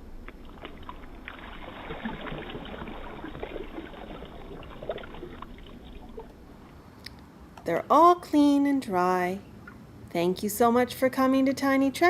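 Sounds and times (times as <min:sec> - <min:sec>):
water pouring and splashing: 0:00.0 - 0:06.8.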